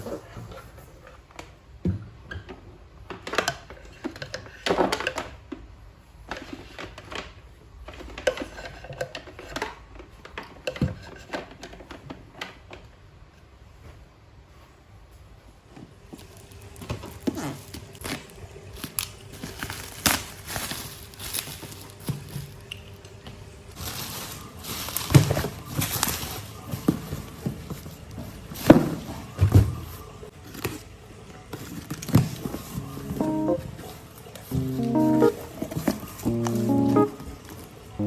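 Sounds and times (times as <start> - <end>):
plastic crinkling: 16.2 - 23.0, 23.7 - 38.0.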